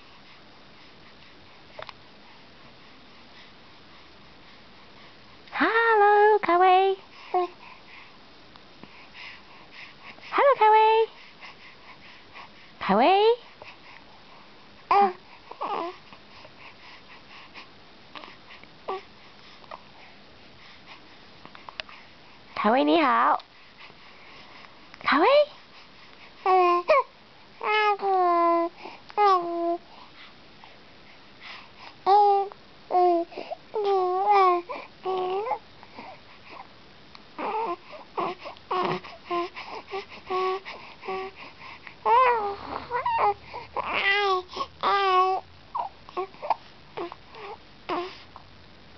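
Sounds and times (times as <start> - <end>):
baby cooing: 14.9 - 16.0, 32.1 - 35.6, 37.4 - 41.3, 42.0 - 48.2
infant whimpering: 14.9 - 16.0, 26.5 - 29.8, 32.1 - 36.6, 37.4 - 48.2.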